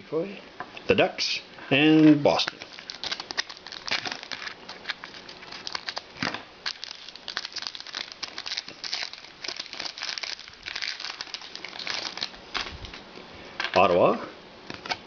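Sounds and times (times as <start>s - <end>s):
cards and wrappers rustling: 2.3s - 13.0s.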